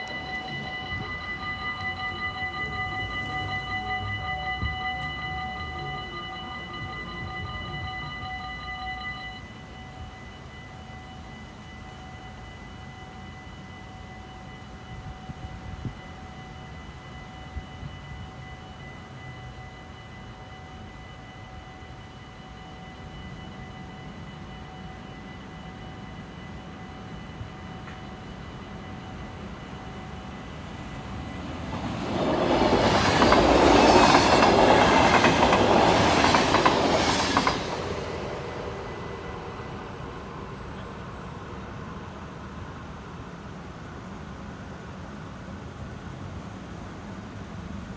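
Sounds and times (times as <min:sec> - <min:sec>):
crossing warning bell: 0:00.0 - 0:47.9
train wheels clattering over rails: 0:31.5 - 0:38.1.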